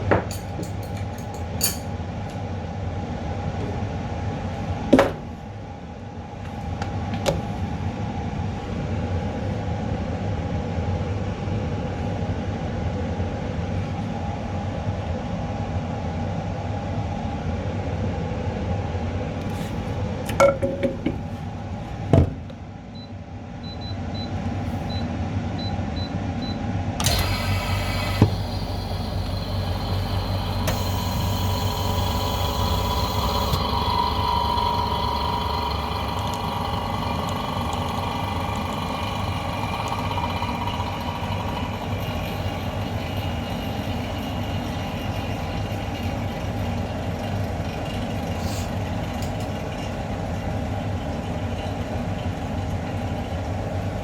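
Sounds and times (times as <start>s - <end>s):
electric motor humming and whining: 27.0s - 45.8s.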